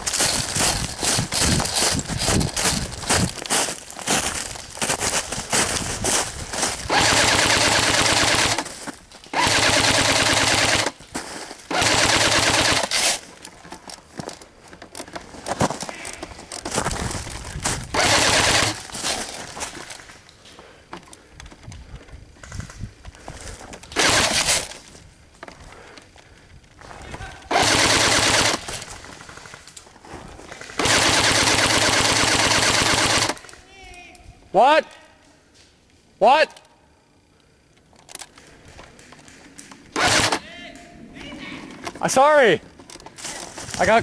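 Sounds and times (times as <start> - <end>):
airsoft guns firing bursts: 6.7 - 11.0, 11.7 - 13.3, 17.9 - 19.1, 23.9 - 24.8, 27.5 - 29.7, 30.5 - 33.6, 39.3 - 40.4.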